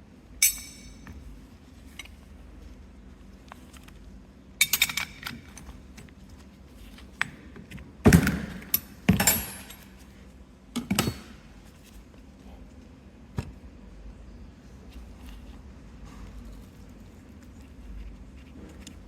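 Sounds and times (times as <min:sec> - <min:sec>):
metal tools clinking: 0:00.4 - 0:01.1, 0:04.6 - 0:05.6, 0:08.7 - 0:09.9.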